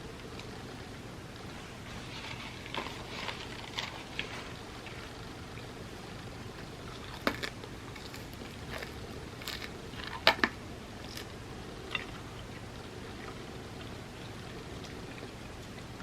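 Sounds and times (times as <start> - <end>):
steady low hiss: 0.0 - 16.0
crunchy chewing and biting: 1.9 - 5.7, 6.7 - 12.6.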